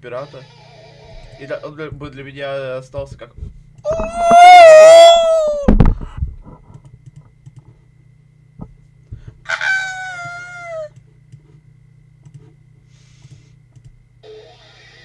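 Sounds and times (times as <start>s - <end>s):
faint steady hum: 0.0s - 15.0s
rooster-like crowing call: 3.9s - 5.8s, 9.5s - 10.9s.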